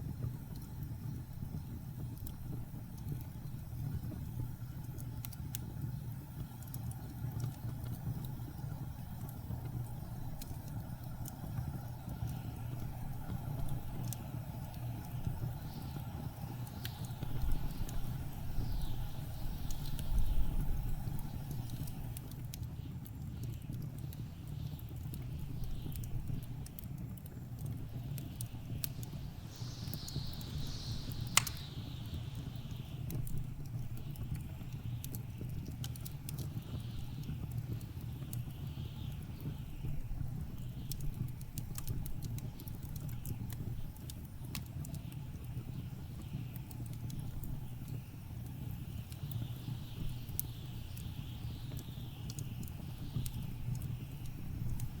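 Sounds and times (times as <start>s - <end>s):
wood fire crackling: 0.0s - 55.0s
blizzard wind gusts: 28.3s - 34.0s
low rumble: 28.5s - 32.9s.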